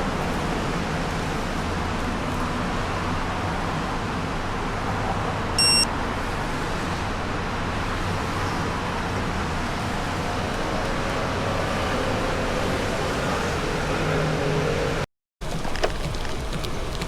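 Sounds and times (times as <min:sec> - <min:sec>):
road traffic noise: 0:00.0 - 0:17.0
high electronic beep: 0:05.6 - 0:05.9.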